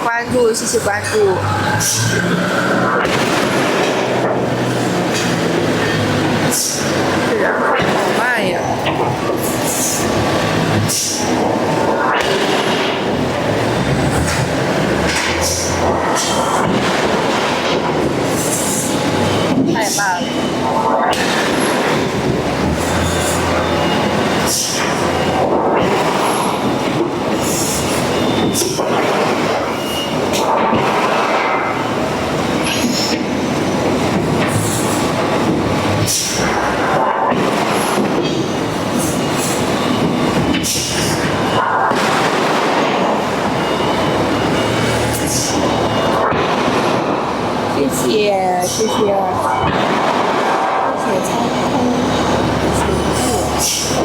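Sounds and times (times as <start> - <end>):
machinery metallic clatter: 0.0 - 54.0.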